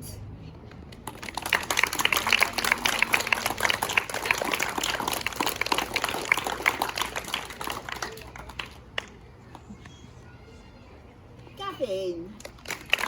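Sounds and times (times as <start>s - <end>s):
applause: 1.0s - 9.1s, 12.4s - 13.0s.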